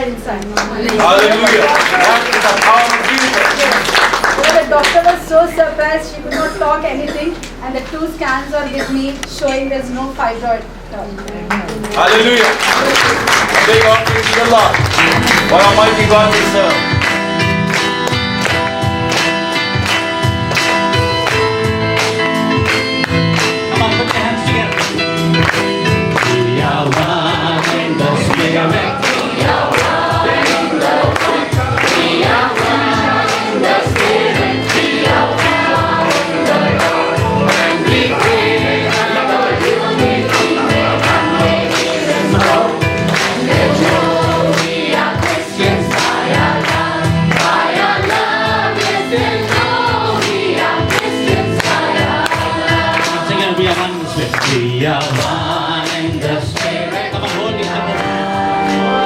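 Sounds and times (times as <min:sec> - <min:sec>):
congregation singing gospel song: 0:00.0 - 0:06.8, 0:11.9 - 0:59.0
instrumental backing with beat: 0:13.8 - 0:59.0.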